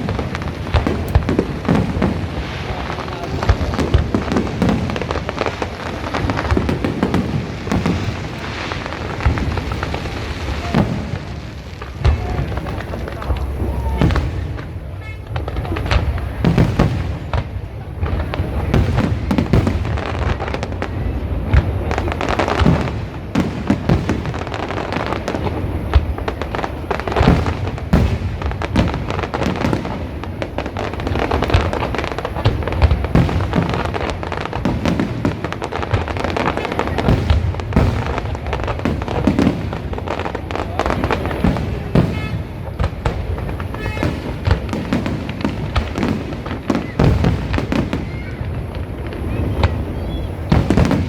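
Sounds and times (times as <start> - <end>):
firework bangs and crackles: 0.0 - 51.0.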